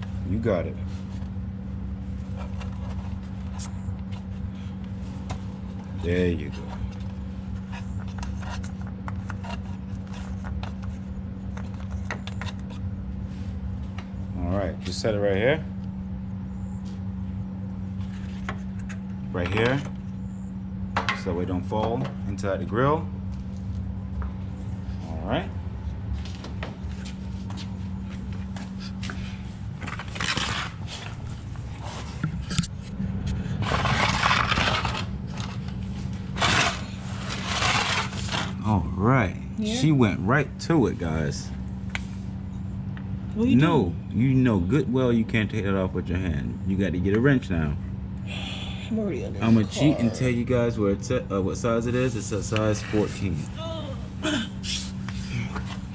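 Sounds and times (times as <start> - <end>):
steady low hum: 0.0 - 55.9
scraping and rustling: 28.7 - 32.7, 33.6 - 38.6.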